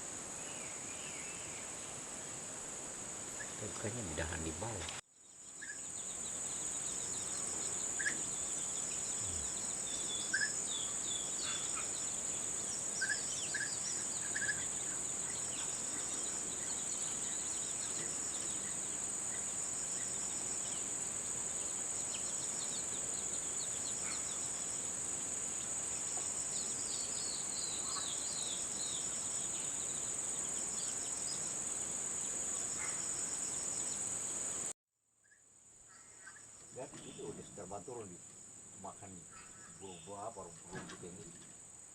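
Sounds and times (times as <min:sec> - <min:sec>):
bird chirps: 0:05.2 - 0:20.9, 0:21.5 - 0:31.6, 0:35.2 - 0:38.1, 0:39.1 - 0:41.5.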